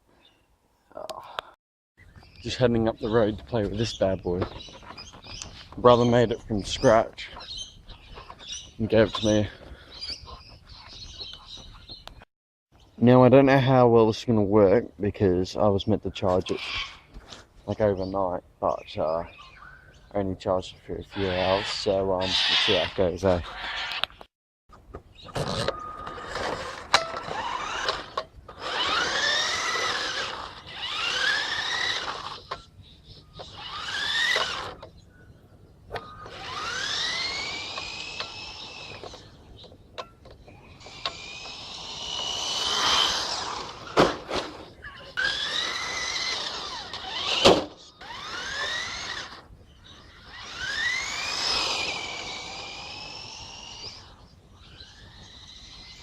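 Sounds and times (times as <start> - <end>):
electric motor whining: 25.4 - 32.7, 33.3 - 35.0, 36.0 - 39.4, 40.5 - 56.0.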